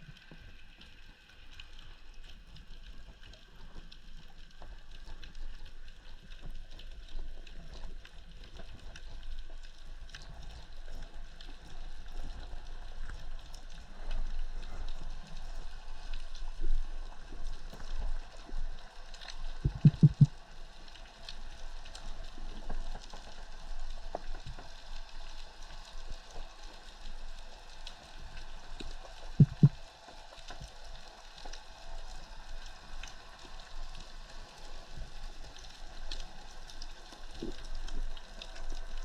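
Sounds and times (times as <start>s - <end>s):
underwater crackle of fine clicks: 0.1s - 39.0s
low underwater thumps: 19.6s - 20.3s, 29.4s - 29.8s.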